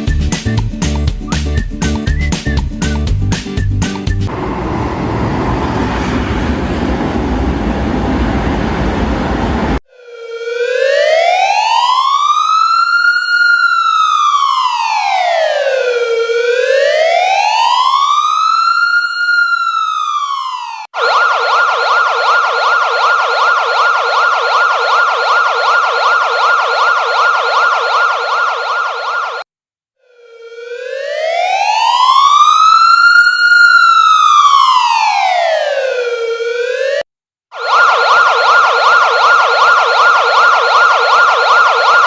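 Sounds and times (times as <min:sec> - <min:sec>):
siren wailing: 0:09.8 - 0:42.0
siren fast yelp: 0:09.9 - 0:42.0.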